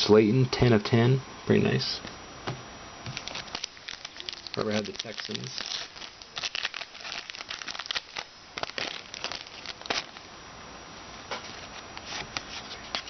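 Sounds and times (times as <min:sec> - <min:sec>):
cards rustling: 0:03.1 - 0:10.3, 0:11.4 - 0:13.0
foil wrapper crinkling: 0:03.1 - 0:10.3.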